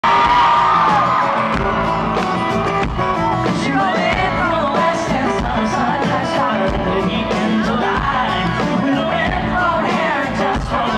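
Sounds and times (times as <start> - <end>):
crowd yelling: 0.0 - 6.7
live country rock band: 0.0 - 10.9
person singing: 3.3 - 10.9.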